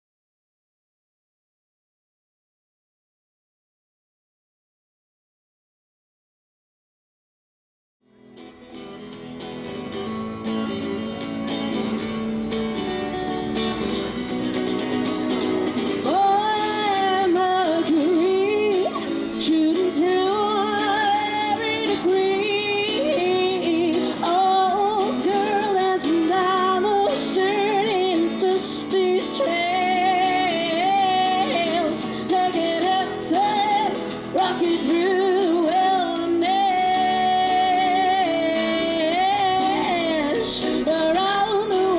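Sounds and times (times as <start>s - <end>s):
guitar accompaniment: 8.1s - 41.9s
woman singing: 12.7s - 41.9s.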